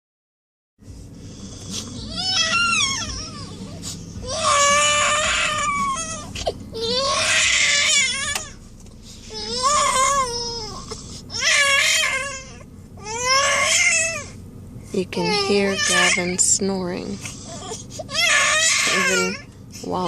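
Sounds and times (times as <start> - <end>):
infant crying: 1.9 - 8.6, 9.3 - 14.4, 15.2 - 16.4, 17.4 - 19.5.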